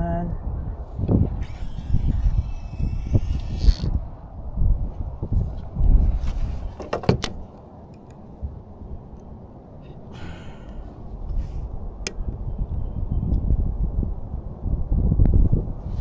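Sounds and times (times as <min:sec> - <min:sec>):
wind buffeting microphone: 0:00.0 - 0:10.2, 0:10.8 - 0:16.0
microphone handling clicks: 0:06.2 - 0:08.5.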